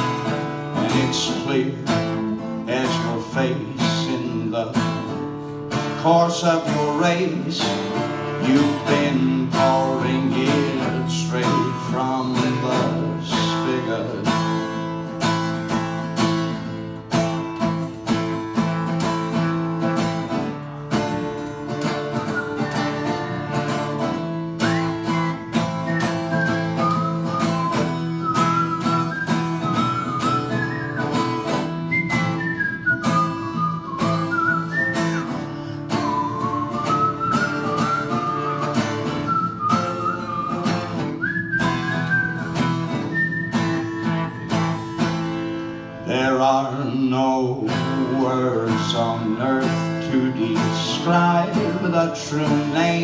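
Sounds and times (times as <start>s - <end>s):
acoustic guitar strumming: 0.0s - 53.0s.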